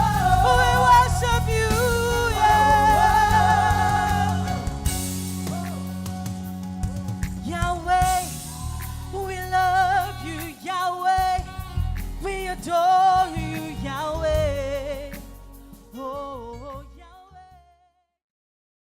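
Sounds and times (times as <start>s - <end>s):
band bass and keys: 0.0s - 17.6s.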